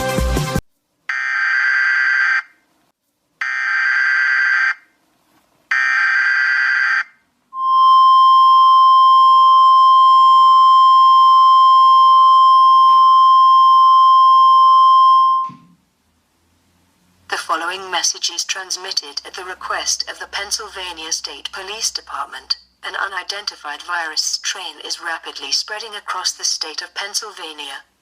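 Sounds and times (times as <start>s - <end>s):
steady attention tone: 7.6s - 15.8s.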